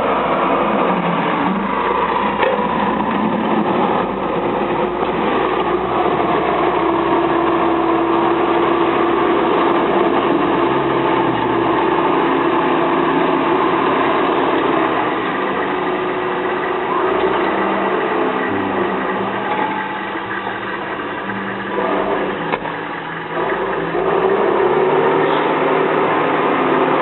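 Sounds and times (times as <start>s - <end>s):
diesel engines of heavy machinery: 0.0s - 27.0s.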